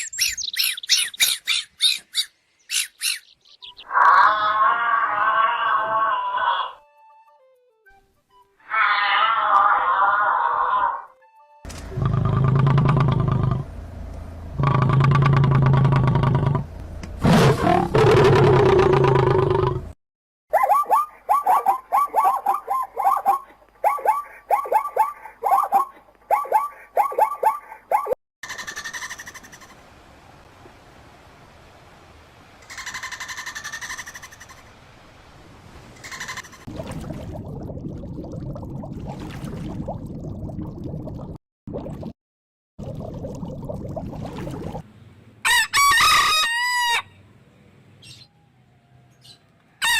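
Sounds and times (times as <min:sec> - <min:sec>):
large animal rasping calls: 0:03.8 - 0:06.8, 0:08.6 - 0:11.1, 0:11.9 - 0:13.7.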